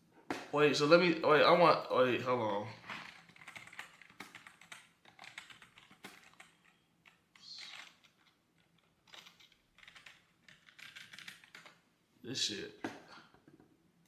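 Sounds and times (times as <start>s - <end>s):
computer keyboard typing: 3.0s - 11.8s.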